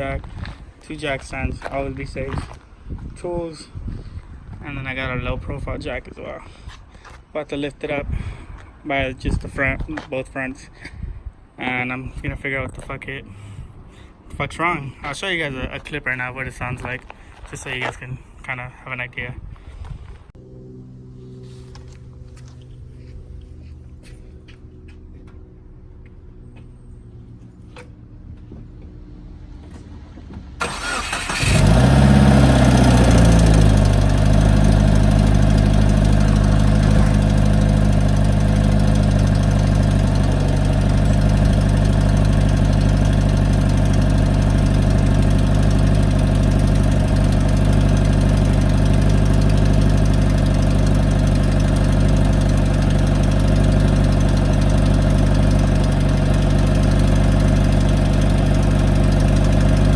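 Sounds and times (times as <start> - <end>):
car engine starting and idling: 30.5 - 59.9.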